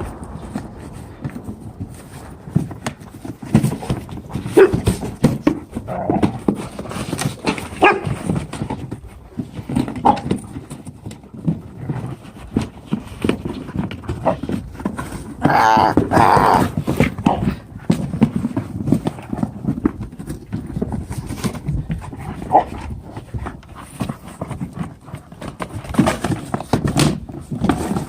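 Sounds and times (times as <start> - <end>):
paws scuffling and thumping: 0.0 - 28.0
dog vocal noises: 15.4 - 17.6.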